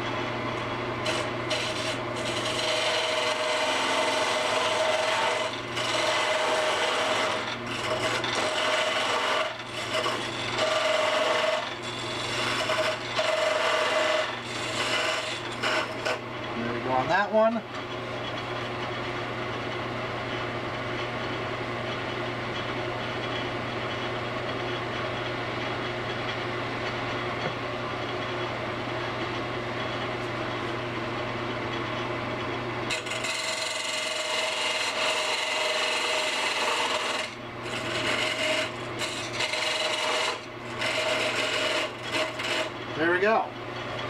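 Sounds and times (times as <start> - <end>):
lathe motor hum: 0.5 - 18.9, 32.9 - 44.0
tool scraping spinning wood: 1.0 - 17.6, 32.8 - 44.0.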